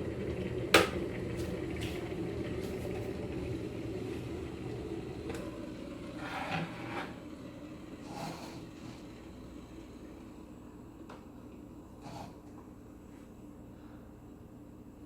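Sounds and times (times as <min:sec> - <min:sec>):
pot cooking rumble: 0:00.0 - 0:10.2.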